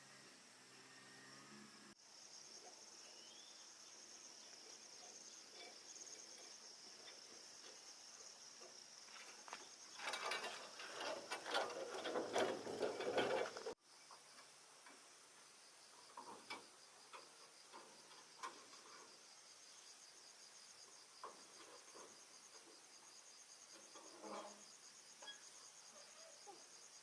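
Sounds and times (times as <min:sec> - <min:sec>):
crickets chirping: 0:00.0 - 0:27.0
scraping and clattering: 0:05.0 - 0:13.8, 0:23.7 - 0:25.4.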